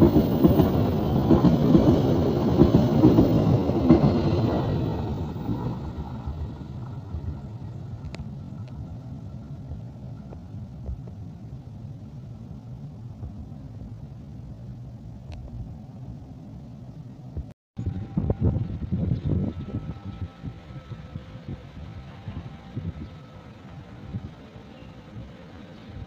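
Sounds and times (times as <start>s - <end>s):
train rumbling: 0.0s - 26.0s.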